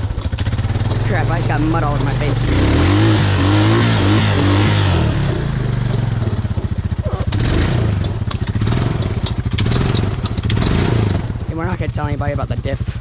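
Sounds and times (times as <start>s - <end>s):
quad bike engine running: 0.0s - 13.0s
sharp clicks: 7.0s - 11.3s.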